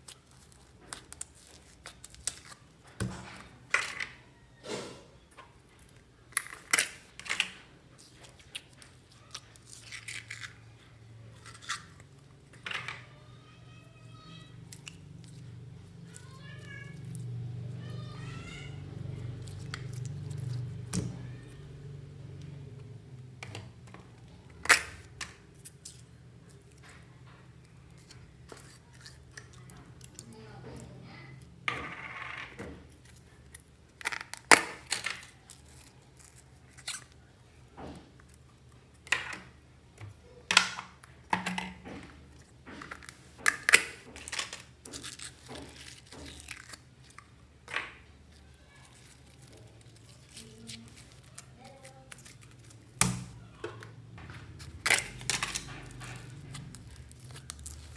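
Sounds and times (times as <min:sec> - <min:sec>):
slime popping and crackling: 0:48.3 - 0:53.6, 0:54.6 - 0:57.9.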